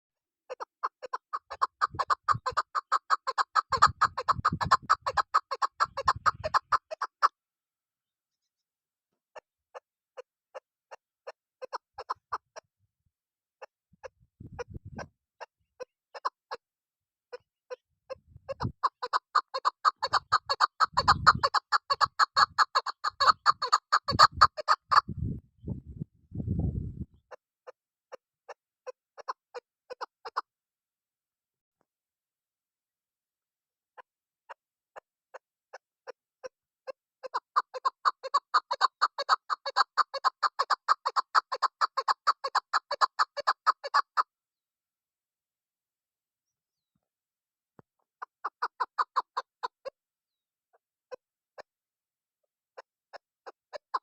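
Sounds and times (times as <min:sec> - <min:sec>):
partridge clucking call: 0:00.5 - 0:07.3, 0:18.5 - 0:25.1, 0:37.2 - 0:44.3, 0:48.2 - 0:49.5, 0:52.8 - 0:54.0.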